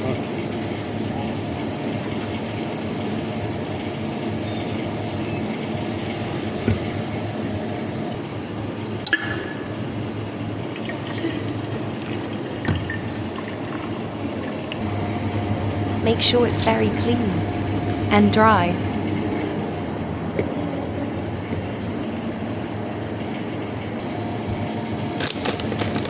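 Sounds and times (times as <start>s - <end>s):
hot water pouring and splashing: 10.5s - 14.8s.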